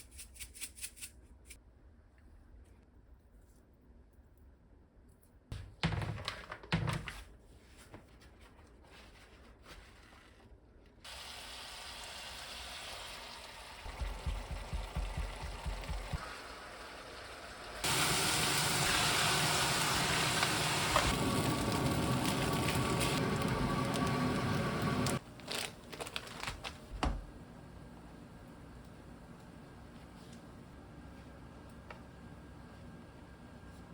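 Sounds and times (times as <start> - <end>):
food sizzling in a frying pan: 16.2 - 25.2.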